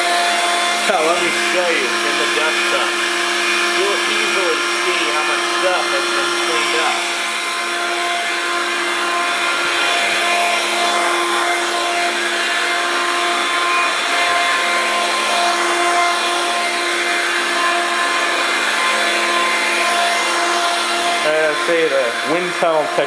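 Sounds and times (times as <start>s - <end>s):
cordless stick vacuum running: 0.0s - 23.0s.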